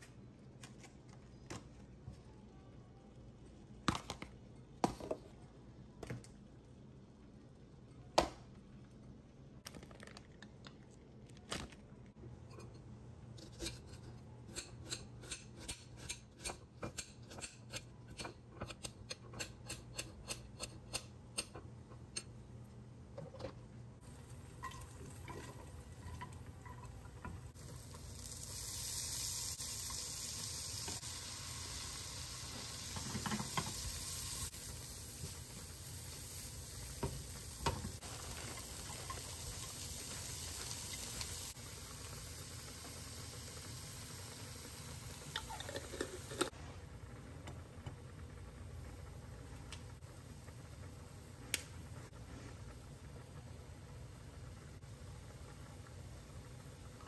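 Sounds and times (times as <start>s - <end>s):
food sizzling in a pan: 24.0s - 46.6s.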